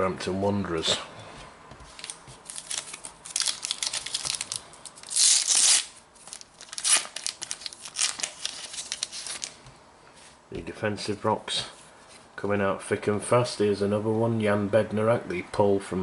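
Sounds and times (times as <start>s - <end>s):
wrapper crinkling and ripping: 2.0s - 9.6s.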